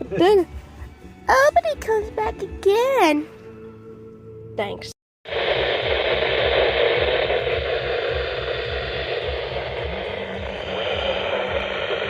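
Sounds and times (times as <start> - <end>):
low irregular rumble: 5.3 - 12.0
radio static hiss: 5.3 - 12.0.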